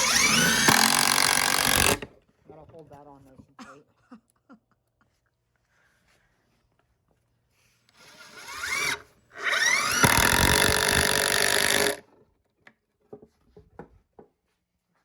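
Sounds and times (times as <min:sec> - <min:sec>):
power drill driving screw into wood: 0:00.0 - 0:02.1, 0:08.0 - 0:12.1.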